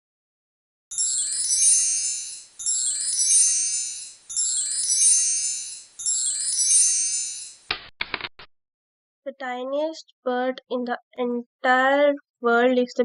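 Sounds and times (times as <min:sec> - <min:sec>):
high chime-like music: 0:00.9 - 0:07.7.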